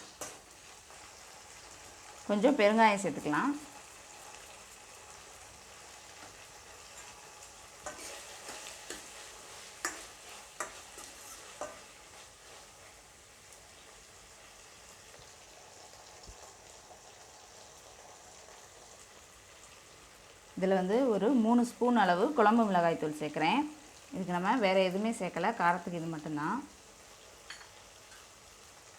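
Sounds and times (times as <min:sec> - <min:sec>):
spoon stirring and knocking pan: 0:00.0 - 0:00.5, 0:07.8 - 0:12.3, 0:27.4 - 0:28.3
vegetables sizzling in oil: 0:00.0 - 0:28.9.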